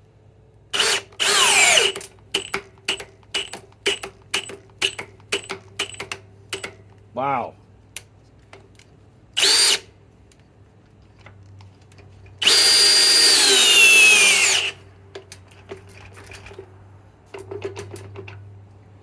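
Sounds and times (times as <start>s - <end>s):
drill motor whine: 0.8s - 2.0s, 9.4s - 9.8s, 12.4s - 14.8s
small clicks and knocks: 1.8s - 7.1s, 7.9s - 9.0s, 15.1s - 18.6s.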